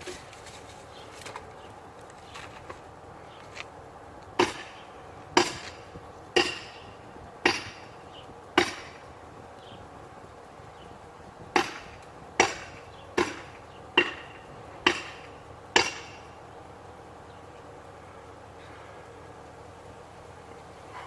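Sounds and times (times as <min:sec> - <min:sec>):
hand tool striking wood: 0:04.4 - 0:04.8, 0:05.4 - 0:05.8, 0:06.4 - 0:06.8, 0:07.4 - 0:07.9, 0:08.6 - 0:09.0, 0:11.5 - 0:16.2.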